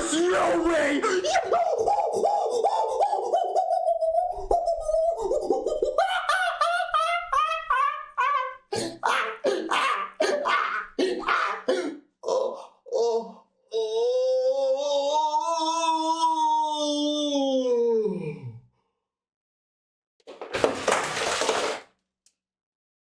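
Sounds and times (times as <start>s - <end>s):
person vocalising wordlessly: 0.0s - 6.0s, 8.2s - 18.6s.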